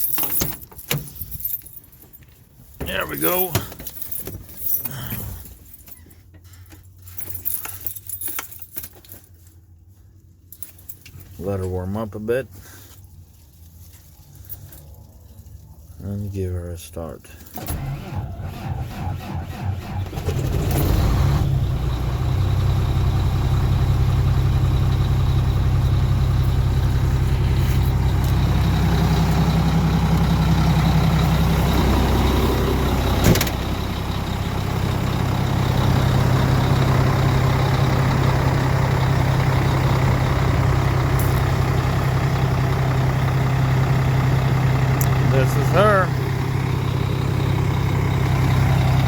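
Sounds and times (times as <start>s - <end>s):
diesel engine idling: 2.9s - 3.8s, 17.7s - 49.0s.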